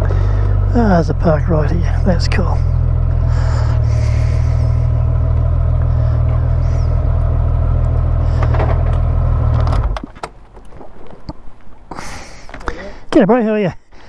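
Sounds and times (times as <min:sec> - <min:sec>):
motorcycle engine idling: 0:00.0 - 0:11.1.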